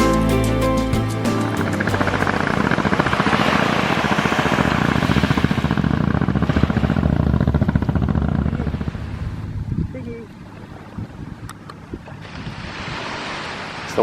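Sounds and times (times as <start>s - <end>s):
rushing noise: 0.0s - 9.2s
engine running with fast chop: 1.0s - 9.6s.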